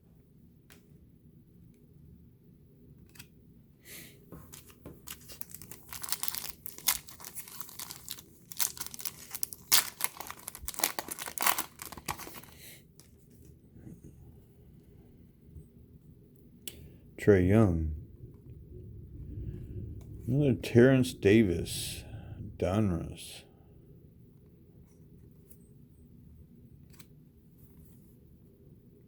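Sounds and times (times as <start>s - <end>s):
plastic wrapper tearing and crinkling: 4.5s - 13.1s.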